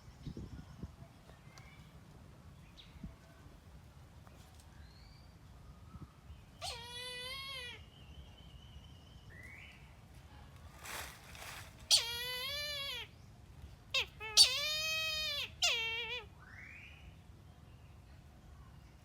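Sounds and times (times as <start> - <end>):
kite mewing cries: 6.6 - 7.8, 11.9 - 13.1, 14.0 - 16.3.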